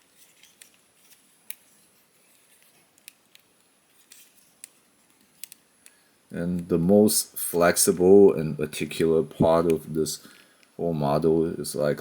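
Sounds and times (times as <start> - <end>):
plastic model parts clicking: 0.3 - 1.7, 2.5 - 6.0.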